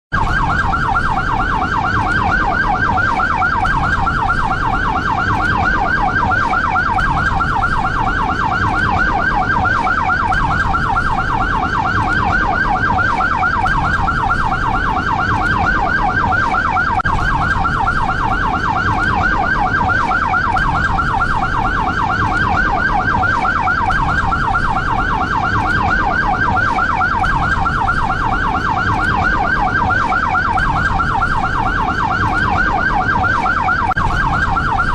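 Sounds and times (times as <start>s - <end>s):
ambulance siren yelping: 0.1s - 34.9s.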